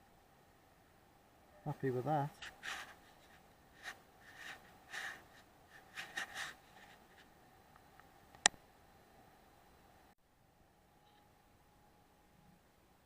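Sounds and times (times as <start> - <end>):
soft rustles: 2.3 - 7.3.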